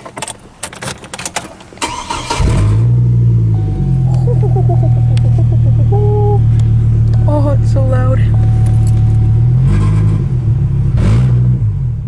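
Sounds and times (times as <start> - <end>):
loud truck engine idling: 3.6 - 9.6
keys rattling: 8.3 - 9.2.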